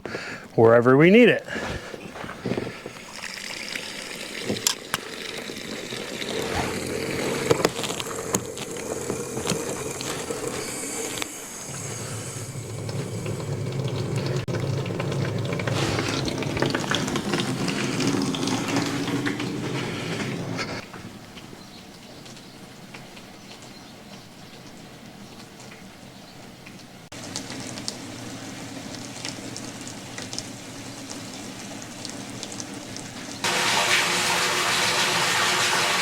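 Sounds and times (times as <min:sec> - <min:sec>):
water rushing from a hose into a tank: 0:01.8 - 0:20.9, 0:27.1 - 0:36.0.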